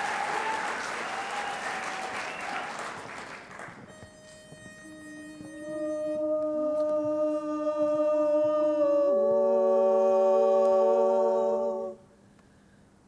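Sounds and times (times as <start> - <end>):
women singing hummed chords: 4.6 - 12.1.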